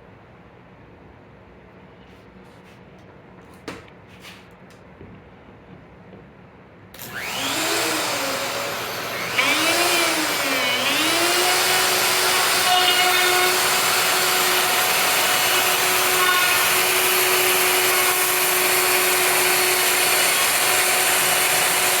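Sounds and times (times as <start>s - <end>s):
router motor running: 7.0s - 22.0s.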